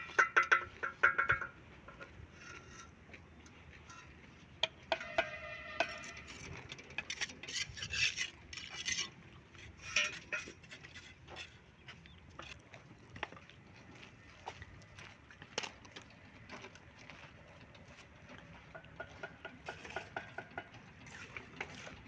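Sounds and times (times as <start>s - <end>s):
trowel clinking on bricks: 0.0s - 2.9s, 3.8s - 11.6s
trowel scraping mortar: 5.0s - 11.6s.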